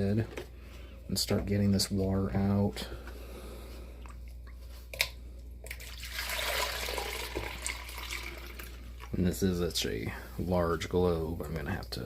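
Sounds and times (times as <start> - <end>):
water gushing from glass globe: 5.8 - 9.2.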